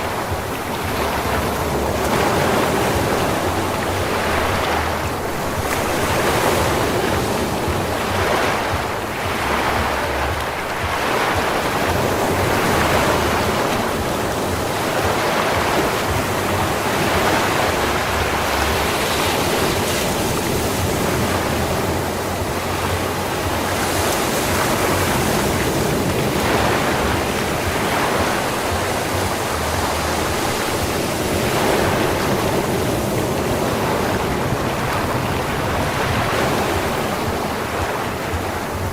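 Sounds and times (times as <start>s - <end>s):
ocean waves breaking on beach: 0.0s - 38.9s.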